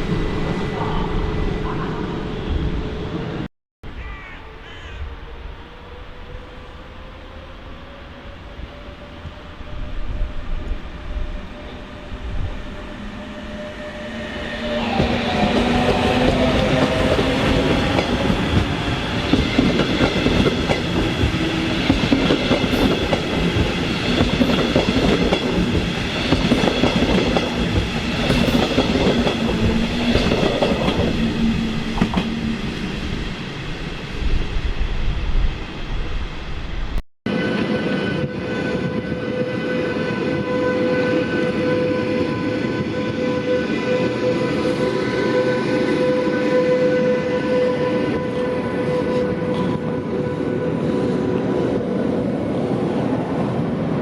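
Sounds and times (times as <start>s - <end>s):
train wheels clattering: 15.0s - 32.6s.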